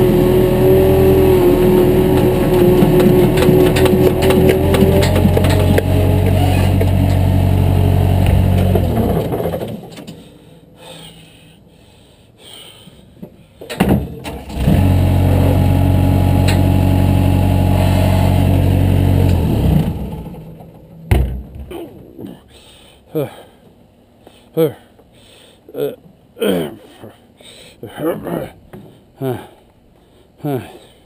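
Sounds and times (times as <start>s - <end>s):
engine cranking: 0.0s - 10.2s
engine running: 0.0s - 10.3s, 14.2s - 22.2s.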